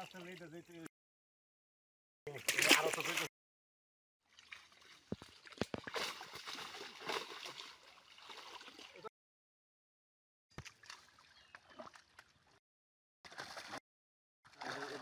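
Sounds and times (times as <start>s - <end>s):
water splashing and sloshing: 2.3s - 3.3s, 4.2s - 9.1s, 10.5s - 12.6s, 13.2s - 13.8s, 14.5s - 15.0s.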